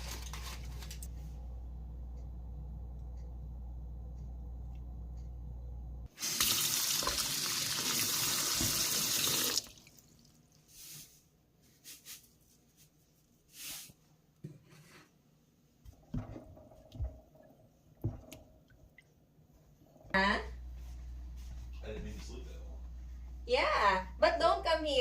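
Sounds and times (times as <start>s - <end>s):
low hum: 0.0s - 6.1s, 15.9s - 25.0s
water tap running: 6.1s - 10.3s.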